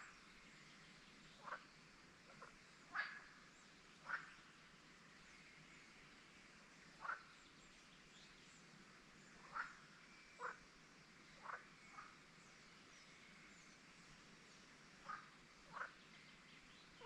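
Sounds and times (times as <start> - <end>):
faint high bird chirps: 9.3 - 10.6.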